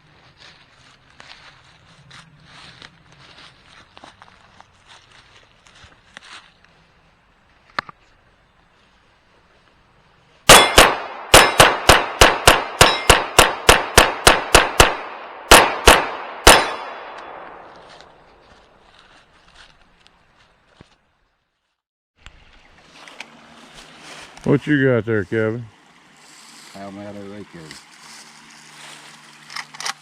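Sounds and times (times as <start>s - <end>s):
rapid gunfire: 10.5s - 17.4s
gunshot echo: 10.5s - 18.1s
steel targets clanging: 12.8s - 13.3s.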